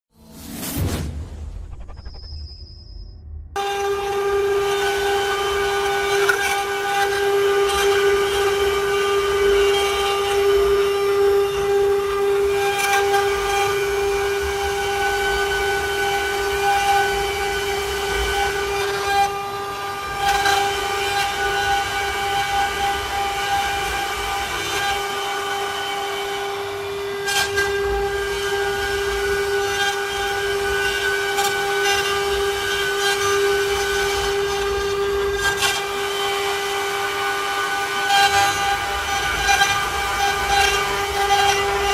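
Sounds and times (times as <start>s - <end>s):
router motor whining: 3.6s - 41.9s.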